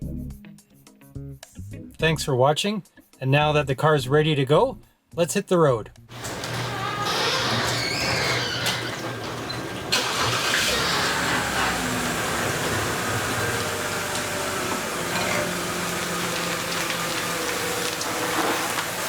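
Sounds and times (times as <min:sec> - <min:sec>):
car engine starting and idling: 0:09.1 - 0:18.4.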